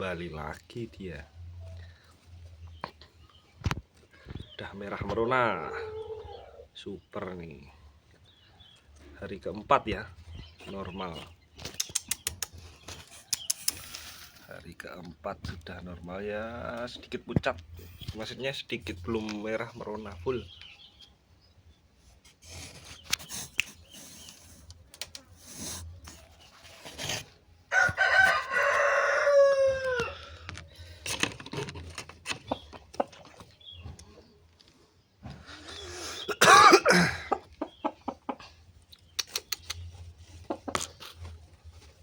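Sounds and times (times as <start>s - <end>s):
rooster crowing: 27.7s - 30.4s.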